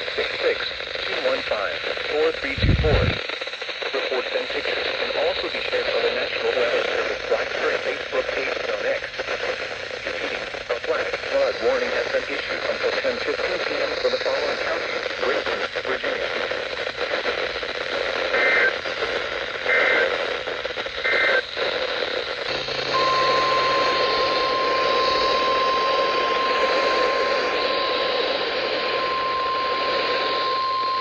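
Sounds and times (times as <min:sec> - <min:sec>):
radio hiss: 0:00.0 - 0:31.0
warbling digital data bursts: 0:02.5 - 0:03.2
steady single-pitch alert tone: 0:22.5 - 0:31.0.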